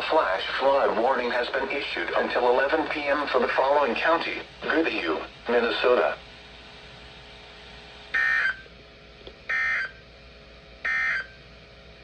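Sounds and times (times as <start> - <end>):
digital data tone bursts: 8.2 - 8.6.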